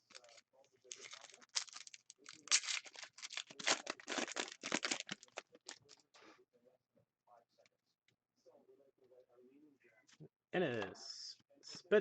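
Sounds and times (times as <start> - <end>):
trading cards rustling: 0.0 - 6.0.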